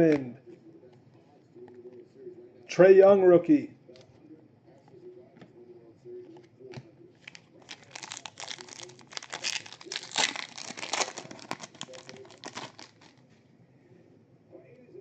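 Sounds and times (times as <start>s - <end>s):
foil wrapper tearing and crinkling: 7.2s - 13.2s.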